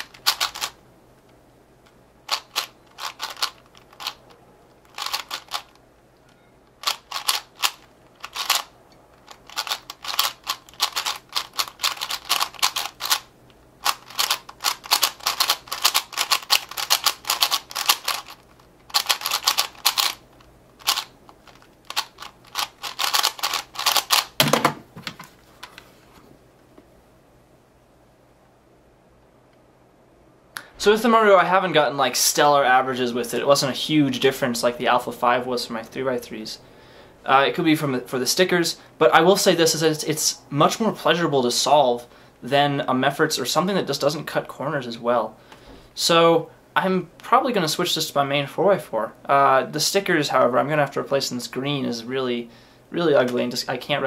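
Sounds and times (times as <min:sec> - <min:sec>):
plastic puzzle cube clicking: 0:00.0 - 0:00.8, 0:02.3 - 0:04.2, 0:04.8 - 0:05.8, 0:06.8 - 0:20.2, 0:20.8 - 0:24.4.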